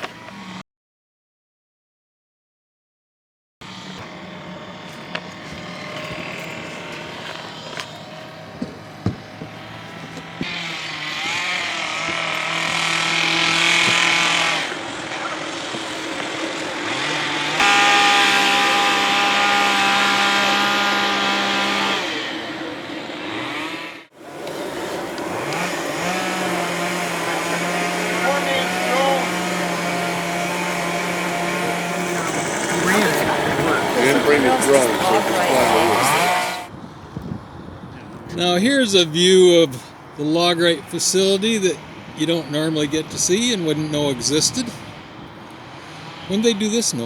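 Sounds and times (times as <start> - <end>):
machine motor running: 3.6 - 36.7.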